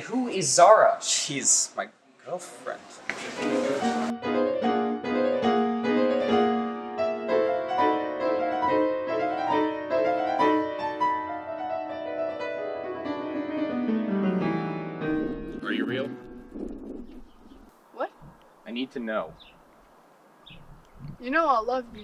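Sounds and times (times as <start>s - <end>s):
solo piano music: 3.4s - 16.4s.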